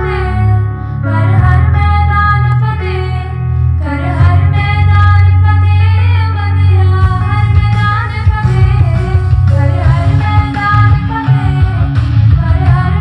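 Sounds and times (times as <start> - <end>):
guitar: 0.0 - 13.0
heavy bass beat: 7.0 - 13.0.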